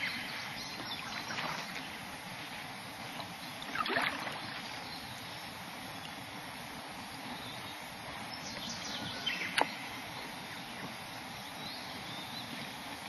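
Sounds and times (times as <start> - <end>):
paddle drips and splashes: 0.0 - 2.0, 3.0 - 5.3
steady outdoor hiss: 0.0 - 13.0.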